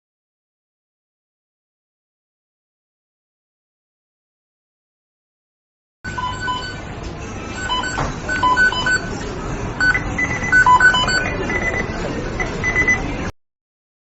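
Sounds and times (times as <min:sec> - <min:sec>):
short electronic beeps: 0:06.1 - 0:06.8, 0:07.6 - 0:09.2, 0:09.8 - 0:13.1.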